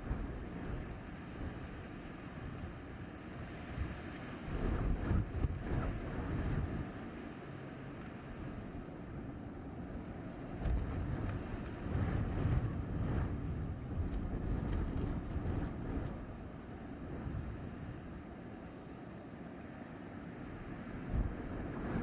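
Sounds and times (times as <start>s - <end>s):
blizzard wind gusting: 0.0s - 22.0s.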